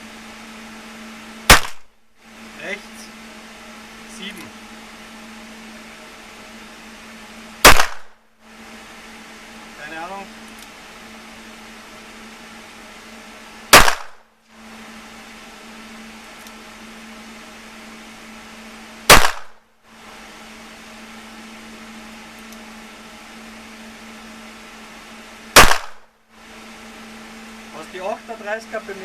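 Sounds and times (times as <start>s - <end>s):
handgun shots: 1.5s - 1.9s, 7.6s - 8.2s, 13.7s - 14.2s, 19.1s - 19.6s, 25.6s - 26.0s.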